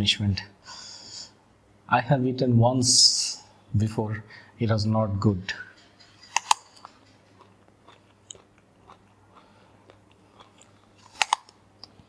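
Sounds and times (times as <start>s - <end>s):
person chewing crunchy food: 6.2s - 12.0s.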